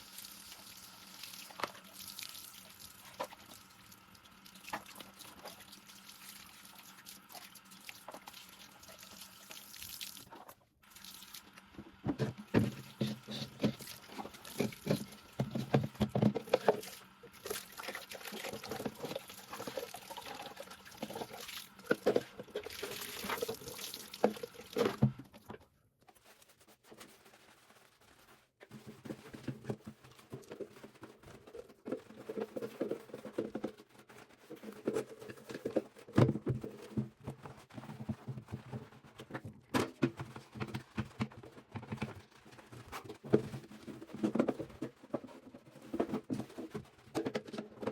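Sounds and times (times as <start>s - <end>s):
water pouring and dripping: 0.0s - 11.6s, 12.5s - 25.2s
plastic parts knocking and clattering: 11.6s - 27.4s, 28.2s - 47.9s.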